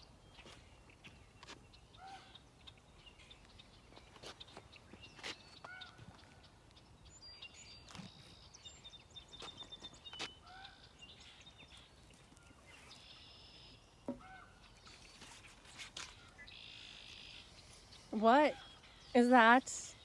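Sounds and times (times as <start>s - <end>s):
bird chirps and trill: 7.0s - 20.0s.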